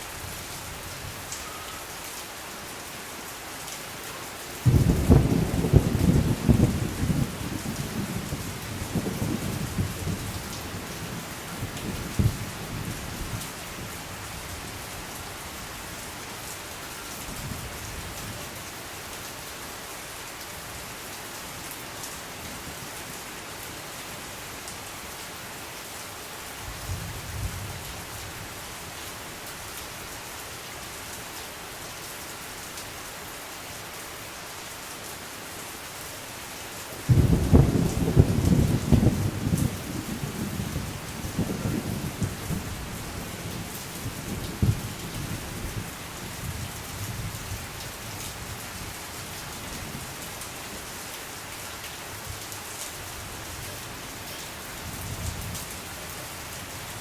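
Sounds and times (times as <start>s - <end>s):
steady rain falling: 0.0s - 57.0s
thunder rumbling: 4.6s - 12.5s, 37.1s - 45.9s.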